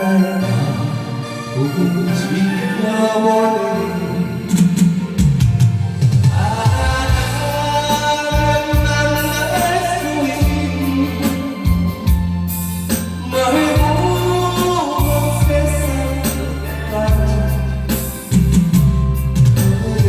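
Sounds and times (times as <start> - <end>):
wavering lead melody: 0.0 - 20.0
steady bass line: 4.4 - 20.0.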